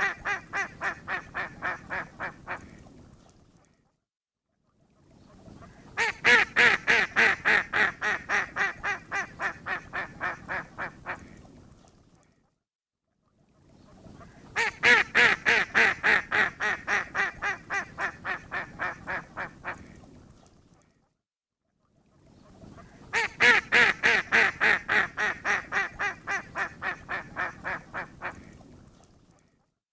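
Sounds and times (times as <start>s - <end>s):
duck quacking rapidly: 14.6s - 19.8s, 23.2s - 28.5s.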